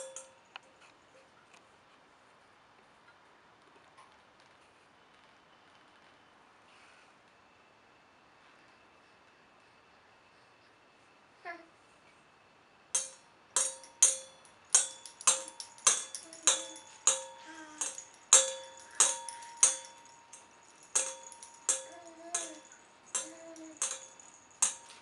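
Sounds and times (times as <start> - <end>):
metal bowl struck and ringing: 0.0 - 0.4, 13.0 - 25.0.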